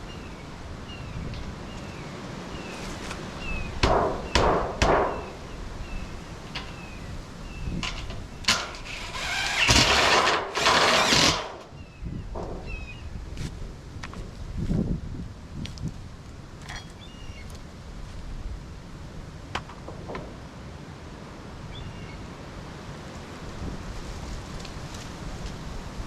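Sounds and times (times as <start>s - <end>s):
knocks of wood and tools: 3.8s - 5.4s, 12.3s - 12.8s, 19.5s - 20.4s
bird chirping: 5.1s - 8.5s, 16.7s - 17.5s
power drill driving screws: 8.8s - 11.7s.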